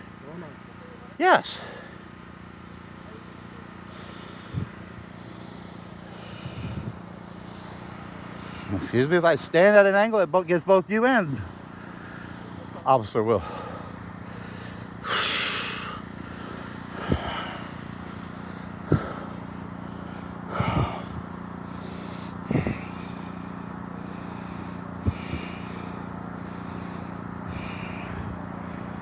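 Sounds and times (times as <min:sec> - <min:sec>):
steady low hum: 0:00.0 - 0:29.0
breathy snort: 0:13.4 - 0:26.0.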